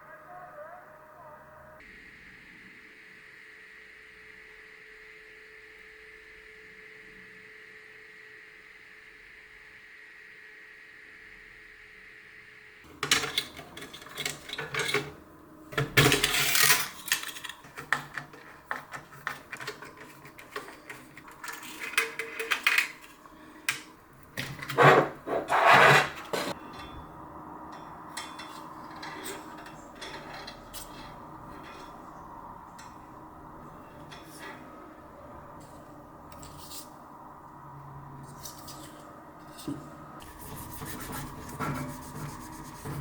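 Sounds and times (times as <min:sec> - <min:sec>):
computer parts clattering: 0:13.0 - 0:27.0.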